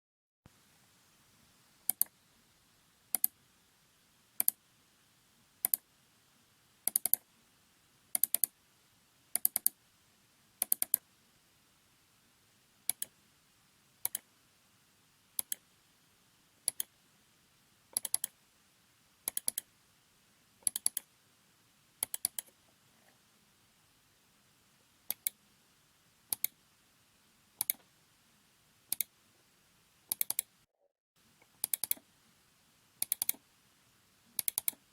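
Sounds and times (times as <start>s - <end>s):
mouse buttons clicking: 1.9s - 2.1s, 3.1s - 3.4s, 4.4s - 4.6s, 5.6s - 5.8s, 6.9s - 7.2s, 8.2s - 8.5s, 9.4s - 9.8s, 10.6s - 11.0s, 12.9s - 13.1s, 14.0s - 14.2s, 15.4s - 15.6s, 16.7s - 16.9s, 17.9s - 18.3s, 19.3s - 19.7s, 20.6s - 21.1s, 22.0s - 22.6s, 25.1s - 25.4s, 26.3s - 26.6s, 27.6s - 27.8s, 28.9s - 29.1s, 30.1s - 30.5s, 31.5s - 32.0s, 33.0s - 33.4s, 34.4s - 34.8s.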